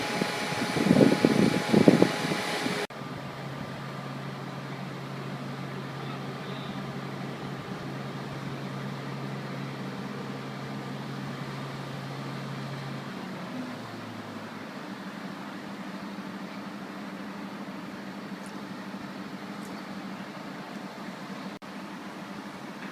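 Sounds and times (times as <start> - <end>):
louder noisy sound: 0.0 - 3.2
truck engine humming: 0.0 - 22.9.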